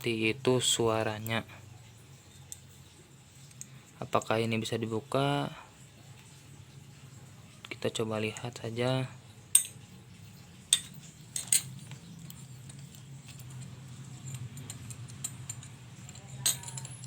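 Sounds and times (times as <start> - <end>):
metallic clicks and clinks: 0.6 - 4.7, 9.5 - 17.0.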